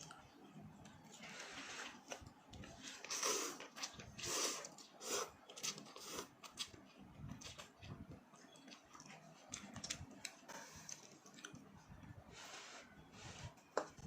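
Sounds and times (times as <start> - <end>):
person chewing: 2.9 - 11.7.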